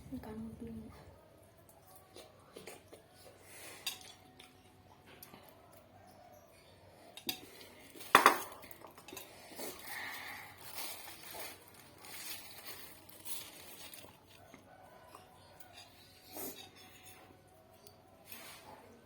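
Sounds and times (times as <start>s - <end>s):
utensils clinking against plate: 2.6s - 4.7s, 7.1s - 9.9s, 15.1s - 17.4s.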